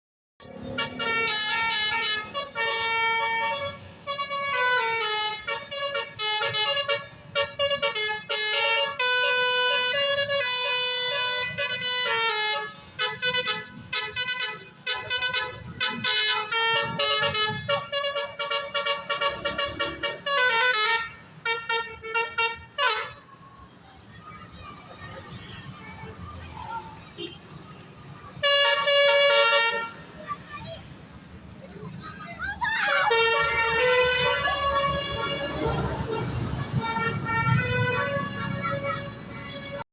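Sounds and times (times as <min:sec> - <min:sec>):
bus musical air horn melody: 0:00.4 - 0:23.3, 0:28.4 - 0:30.2, 0:32.8 - 0:39.9.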